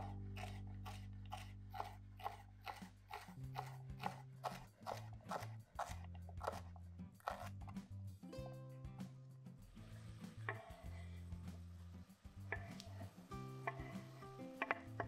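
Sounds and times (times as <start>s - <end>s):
clicking percussion beat: 14.6s - 15.0s.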